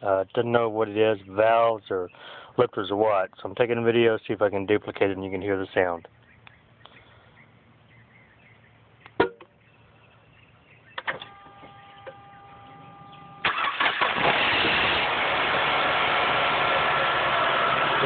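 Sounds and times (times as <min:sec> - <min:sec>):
ignition clicks: 0:11.0 - 0:14.5
car engine cranking and starting: 0:11.0 - 0:18.0
car engine idling: 0:11.3 - 0:18.0.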